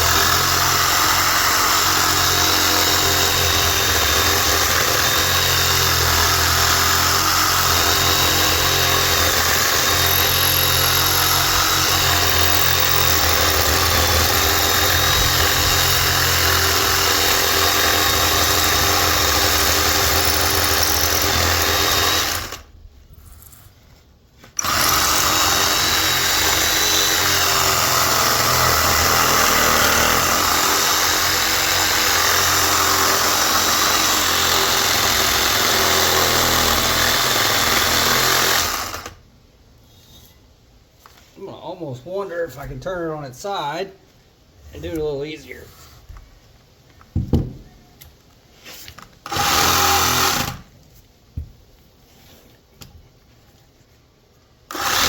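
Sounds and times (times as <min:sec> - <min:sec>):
handheld power tool running: 0:00.0 - 0:22.7, 0:24.6 - 0:39.2, 0:49.2 - 0:50.7, 0:54.7 - 0:55.0.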